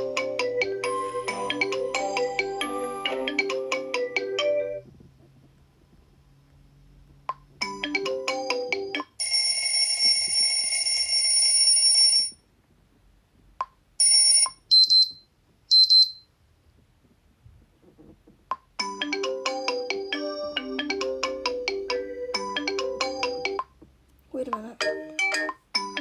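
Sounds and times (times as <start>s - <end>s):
high chirps: 14.7s - 16.3s.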